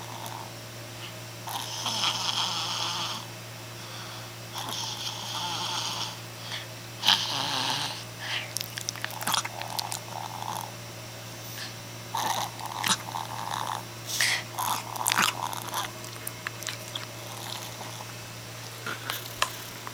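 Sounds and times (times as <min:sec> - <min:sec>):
dog rasping breathing: 0:03.8 - 0:10.7, 0:11.4 - 0:19.9.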